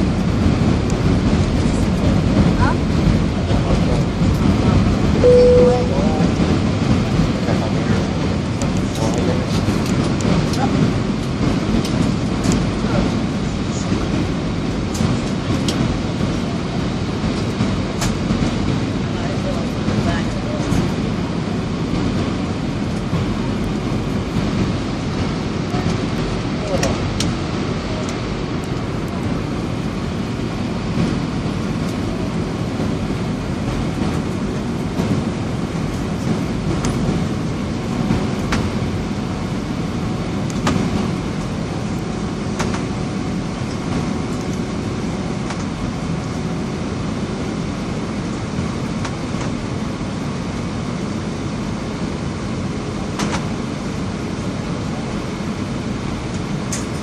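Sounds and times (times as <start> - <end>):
airflow and engine noise: 0.0 - 57.0.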